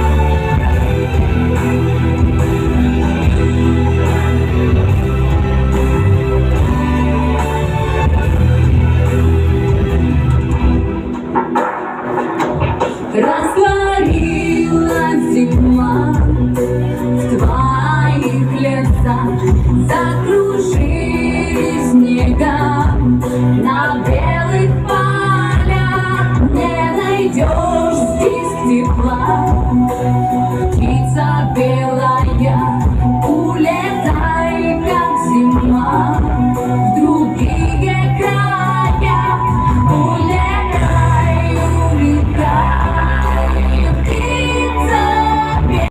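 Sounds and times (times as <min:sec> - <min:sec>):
instrumental backing track with bass: 0:00.0 - 0:45.9
woman singing pop song: 0:12.9 - 0:45.9.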